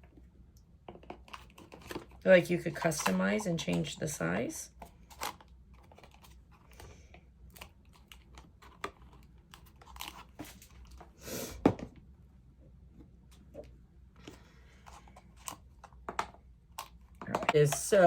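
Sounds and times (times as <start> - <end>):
paper rustling and crinkling: 7.5 - 11.1.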